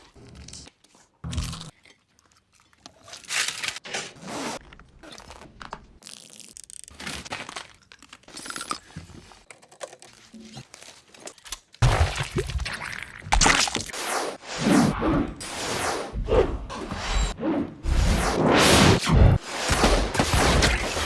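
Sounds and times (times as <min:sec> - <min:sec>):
film sound effects: 0:11.8 - 0:21.0.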